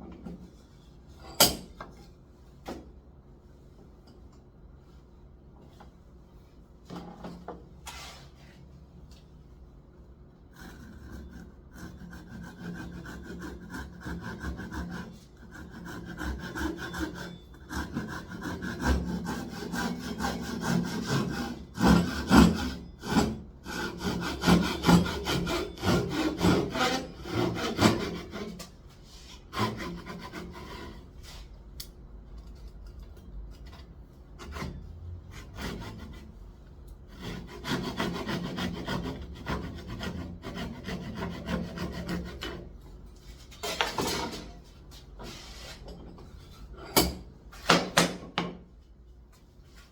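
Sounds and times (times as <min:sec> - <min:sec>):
hand saw cutting timber: 0:10.5 - 0:31.4, 0:34.4 - 0:36.3, 0:37.1 - 0:42.7.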